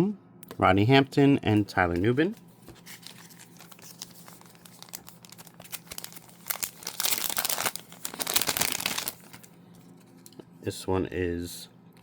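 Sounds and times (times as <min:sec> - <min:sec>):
card packaging crinkling: 0:02.6 - 0:09.6.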